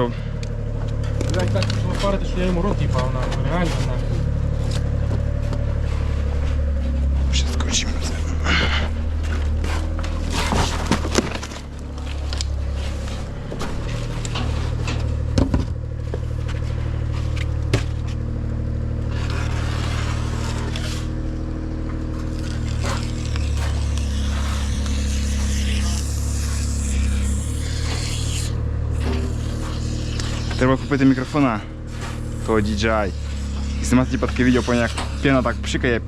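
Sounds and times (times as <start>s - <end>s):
motor humming: 0.0s - 36.0s
scrapes and clicks: 9.2s - 15.2s, 21.9s - 35.5s.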